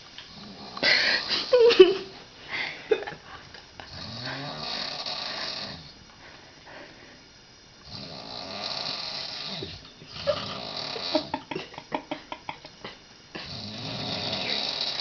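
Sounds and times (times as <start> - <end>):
woman snoring loudly: 0.3 - 1.7, 3.9 - 6.0, 7.8 - 11.5, 13.4 - 15.0.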